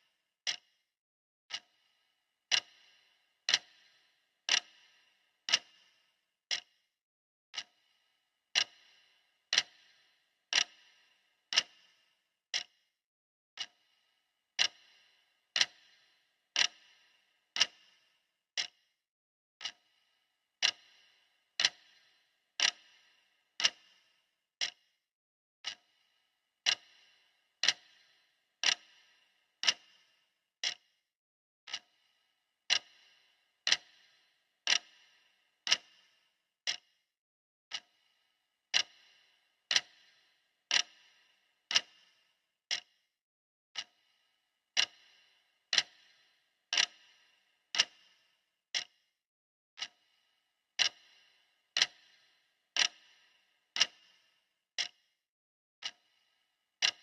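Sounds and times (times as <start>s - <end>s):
clock ticking: 0.0s - 0.8s, 1.5s - 1.9s, 2.5s - 6.8s, 7.5s - 7.9s, 8.5s - 12.8s, 13.6s - 13.9s, 14.6s - 18.9s, 19.6s - 20.0s, 20.6s - 24.9s, 25.6s - 26.0s, 26.6s - 30.9s, 31.7s - 32.1s, 32.7s - 36.9s, 37.7s - 38.1s, 38.7s - 43.0s, 43.8s - 49.0s, 49.8s - 50.2s, 50.8s - 55.1s, 55.8s - 57.0s.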